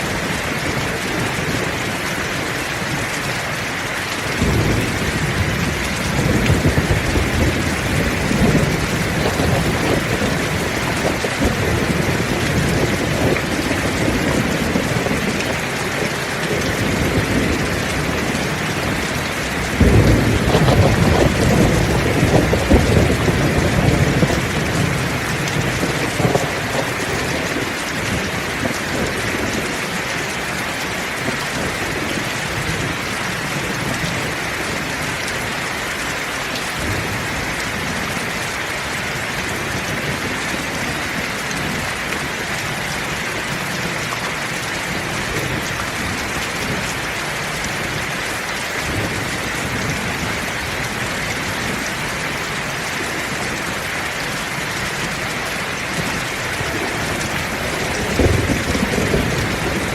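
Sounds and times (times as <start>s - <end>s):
thunder rumbling: 0.0s - 35.1s, 48.8s - 59.9s
heavy rain falling: 0.0s - 59.9s.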